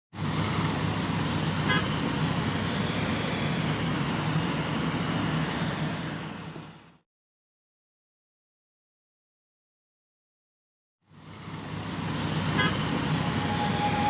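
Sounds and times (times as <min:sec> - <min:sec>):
heavy diesel engine running: 0:11.2 - 0:14.0
brief high tone: 0:12.7 - 0:14.0.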